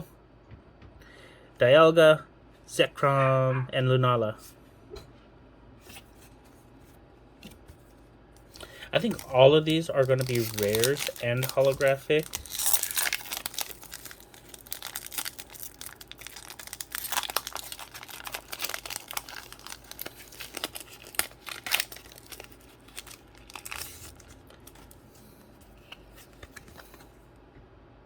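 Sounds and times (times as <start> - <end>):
plastic wrapper tearing and crinkling: 8.4 - 25.2.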